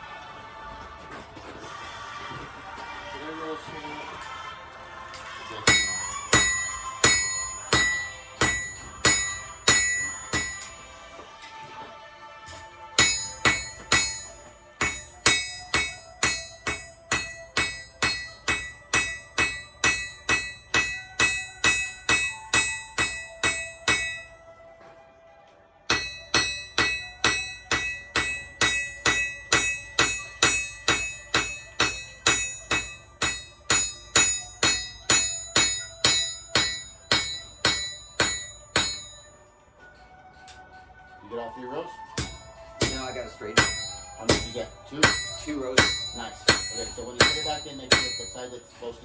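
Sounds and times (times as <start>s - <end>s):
hammer striking metal on anvil: 5.6s - 11.0s, 12.5s - 24.5s, 25.9s - 39.4s, 42.1s - 49.0s.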